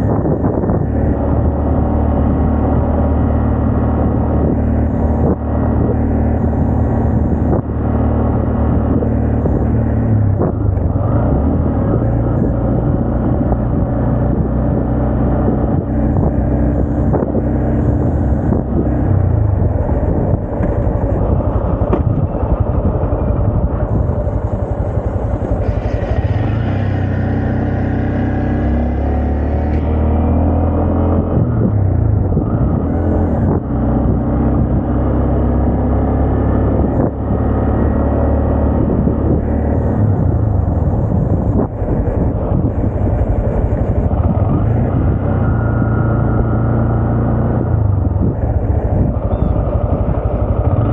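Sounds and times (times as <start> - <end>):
motorcycle engine running: 0.0 - 50.9
high-pitched whine: 39.9 - 50.9.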